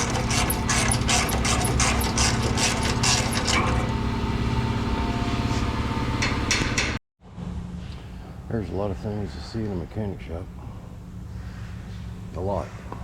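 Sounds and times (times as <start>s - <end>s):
rapid clattering and knocking: 0.0s - 3.9s
motor running: 0.0s - 7.0s.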